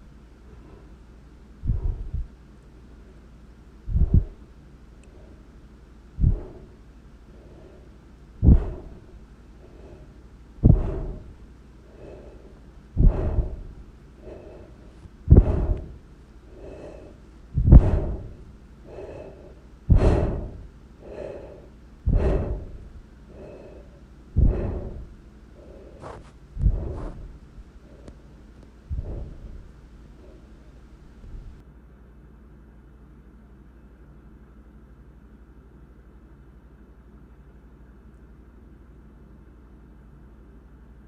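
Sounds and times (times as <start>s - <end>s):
loud breath-like burst: 6.2s - 28.2s, 28.9s - 31.6s.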